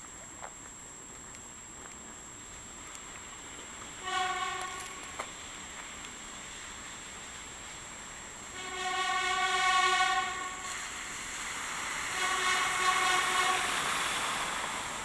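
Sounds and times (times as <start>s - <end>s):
outdoor background noise: 0.0s - 15.0s
short horn blast: 4.0s - 5.4s, 8.4s - 14.6s.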